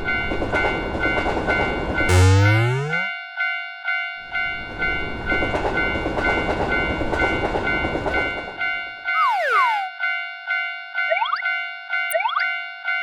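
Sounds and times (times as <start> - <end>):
quick falling glide: 2.1 - 3.1.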